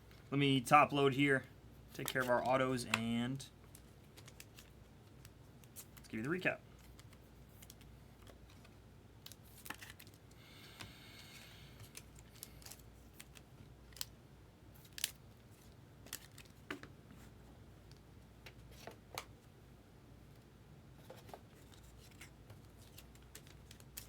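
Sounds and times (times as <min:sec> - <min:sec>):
cards and plastic clicking: 0:01.9 - 0:06.2, 0:21.2 - 0:24.0.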